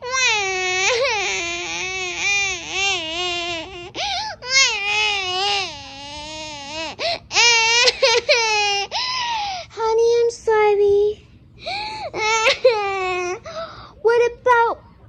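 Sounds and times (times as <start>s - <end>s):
child wailing: 0.0s - 9.5s, 12.1s - 13.7s.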